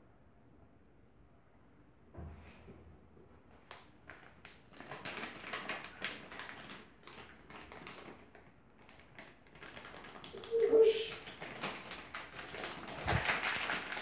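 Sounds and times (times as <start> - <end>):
plastic packet crinkling: 4.0 - 14.0.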